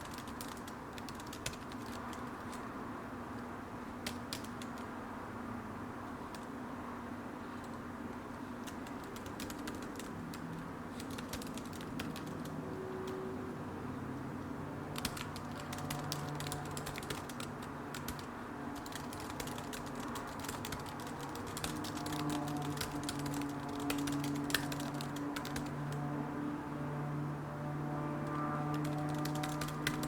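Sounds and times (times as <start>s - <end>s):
fast keyboard typing: 0.0s - 2.7s, 4.0s - 5.0s, 6.2s - 6.5s, 8.4s - 13.3s, 14.8s - 26.1s, 28.3s - 30.0s.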